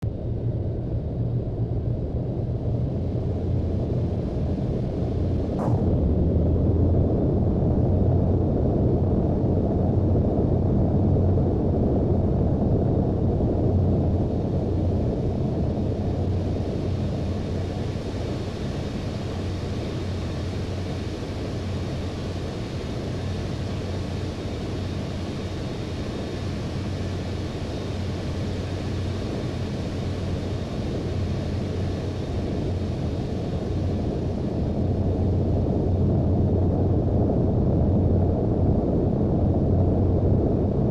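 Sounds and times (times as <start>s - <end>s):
jet engines running: 0.1s - 40.9s.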